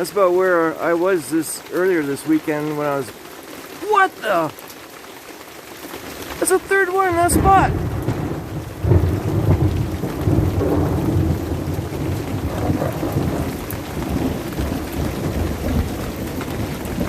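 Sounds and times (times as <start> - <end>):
steady rain: 0.0 - 17.0
thunder rumbling: 7.0 - 17.0.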